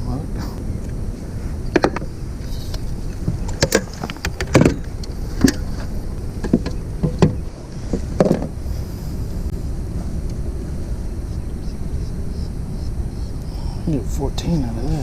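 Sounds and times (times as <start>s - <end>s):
steady low rumble: 0.0s - 15.0s
knocks and thumps on a kayak: 1.7s - 2.1s, 3.2s - 5.7s, 6.4s - 8.6s.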